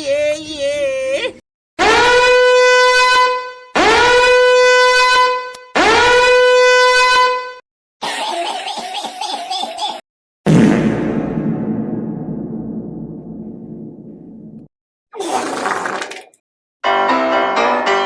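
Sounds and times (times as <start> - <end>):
air horn blasts: 1.8 - 7.6.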